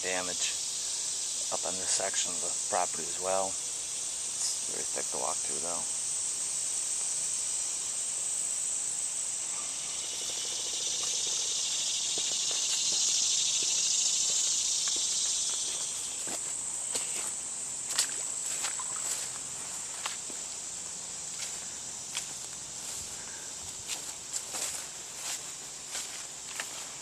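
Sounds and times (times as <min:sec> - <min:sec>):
high-pitched insect chorus: 0:00.0 - 0:27.0
footsteps crunching through undergrowth: 0:11.0 - 0:27.0.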